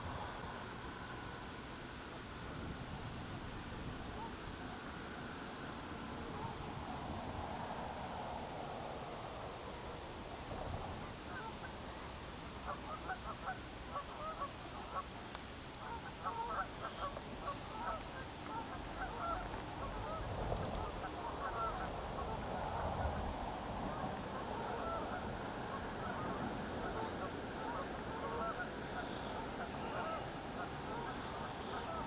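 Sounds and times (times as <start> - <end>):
geese honking: 11.3 - 11.8, 12.6 - 15.1, 15.8 - 23.2, 23.9 - 32.0.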